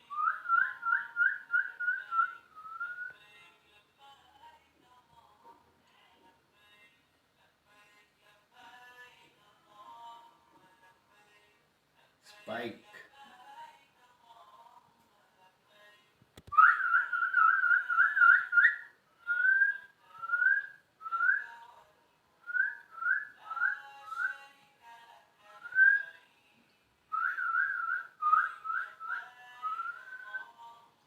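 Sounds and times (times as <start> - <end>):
person whistling: 0.1 - 3.2, 16.5 - 21.5, 25.7 - 26.1, 27.2 - 30.6.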